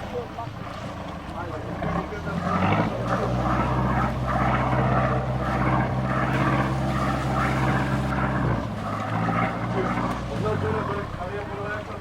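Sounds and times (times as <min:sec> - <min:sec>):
boat engine droning: 0:00.0 - 0:12.0.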